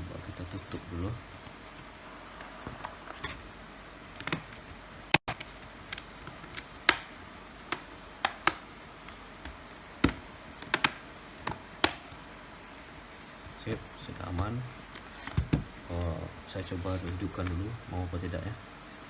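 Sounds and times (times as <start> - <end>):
plastic snap clips clicking: 9.4 - 12.1.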